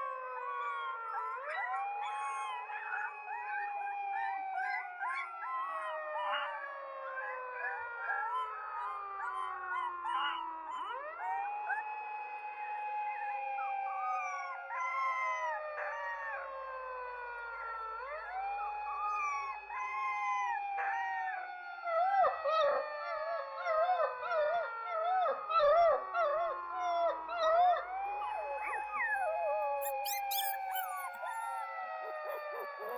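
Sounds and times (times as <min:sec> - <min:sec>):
dogs howling: 0:00.0 - 0:12.0, 0:25.6 - 0:32.9.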